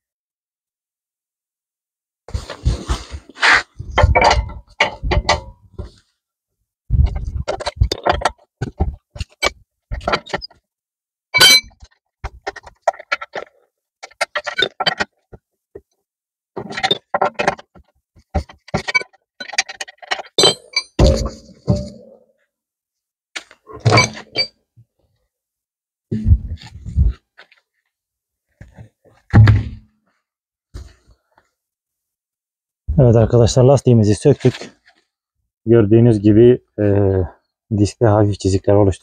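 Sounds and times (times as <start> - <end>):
metal clicks and clanks: 4.0 - 5.6, 11.4 - 15.1, 23.8 - 24.5
short metallic ring: 11.4 - 11.7.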